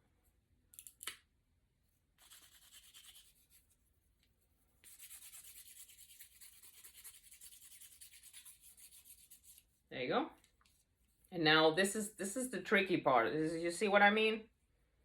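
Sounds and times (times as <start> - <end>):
scratchy rubbing strokes: 2.2 - 9.9
soft rustle: 9.2 - 11.3.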